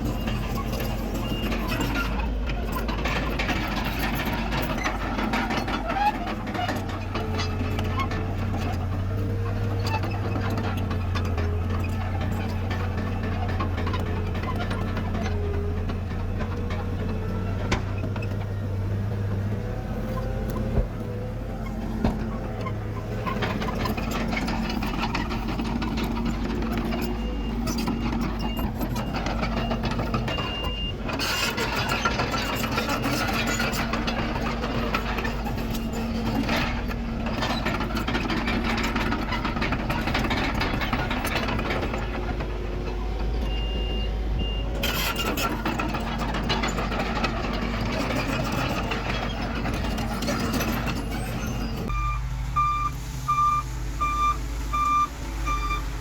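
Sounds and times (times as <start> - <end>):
heavy diesel machinery running: 0.0 - 56.0
reversing beeper: 51.9 - 55.9.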